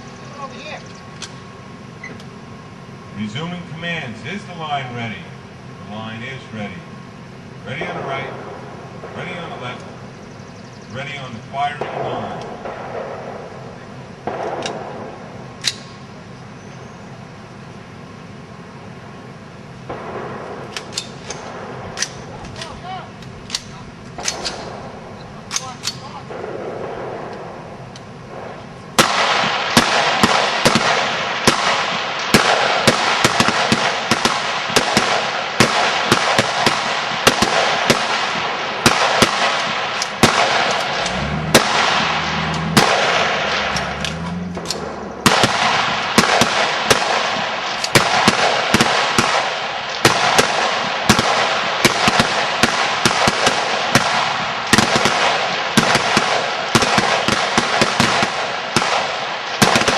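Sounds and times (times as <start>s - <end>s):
rifle shots barrage: 7.7s - 10.1s, 11.0s - 16.0s, 19.8s - 59.9s.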